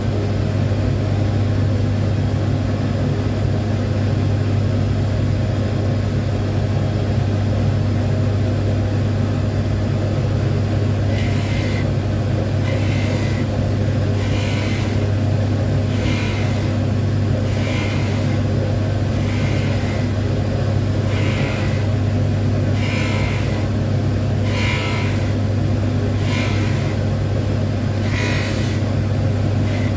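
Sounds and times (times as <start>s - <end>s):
polishing machine motor humming: 10.2s - 29.9s
hissing strokes on spinning wheel: 11.1s - 12.0s, 12.6s - 15.1s, 15.9s - 16.8s, 26.2s - 27.1s, 28.0s - 28.9s, 29.6s - 29.9s.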